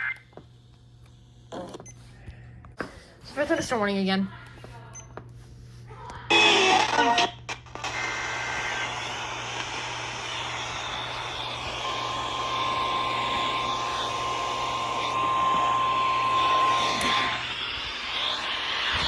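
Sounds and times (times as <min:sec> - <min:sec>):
low hum: 0:06.7 - 0:19.0
steady high tone: 0:07.9 - 0:19.0.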